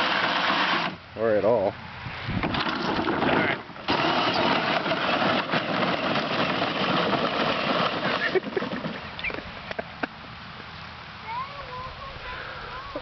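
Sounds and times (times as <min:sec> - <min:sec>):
electric motors whining: 0:00.0 - 0:01.0, 0:02.5 - 0:08.2
plastic wheels rolling over ground: 0:02.4 - 0:09.4.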